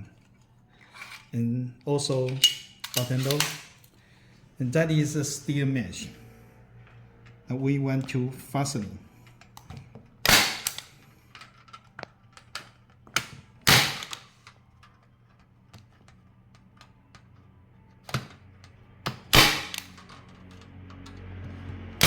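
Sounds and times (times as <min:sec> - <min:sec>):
staple gun snapping: 0:10.2 - 0:10.9, 0:19.3 - 0:20.0.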